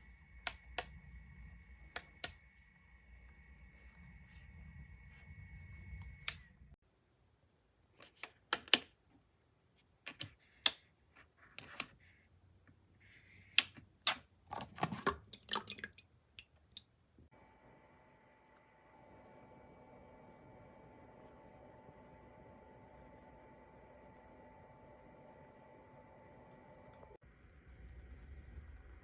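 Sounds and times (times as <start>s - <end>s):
steady hum: 0.0s - 6.8s.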